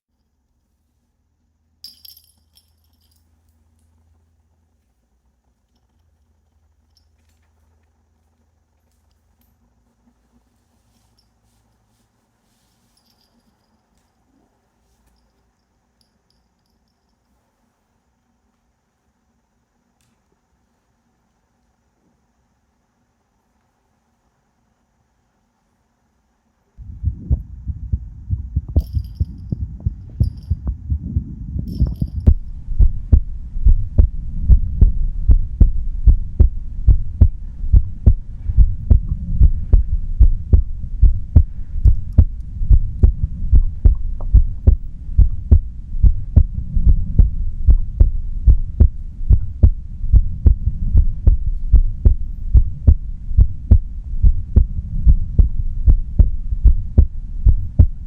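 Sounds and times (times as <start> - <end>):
heartbeat thumps: 26.8 - 58.0.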